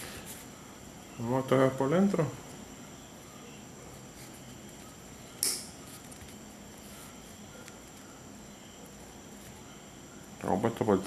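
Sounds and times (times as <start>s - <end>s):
steady low hiss: 0.0s - 11.0s
sharp snap of cord being cut: 5.4s - 5.7s.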